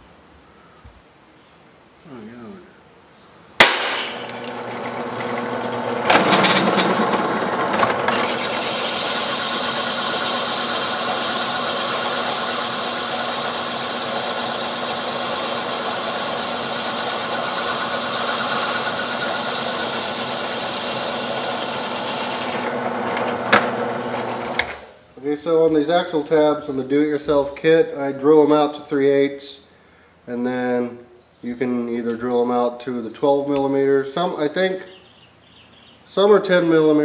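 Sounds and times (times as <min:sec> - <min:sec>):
power tool running on steel: 0:03.9 - 0:24.9.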